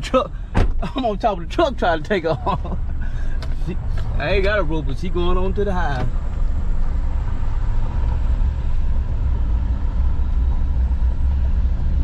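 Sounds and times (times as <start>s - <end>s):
truck engine and road rumble: 0.0s - 12.0s.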